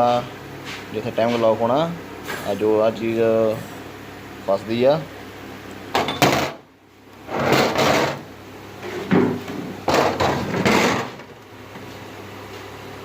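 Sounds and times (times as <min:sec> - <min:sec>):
parts scraping and rattling: 0:07.3 - 0:11.4.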